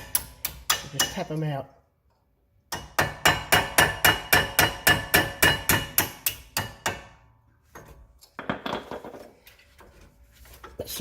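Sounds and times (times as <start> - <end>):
hammer tapping metal punch: 2.7 - 7.2.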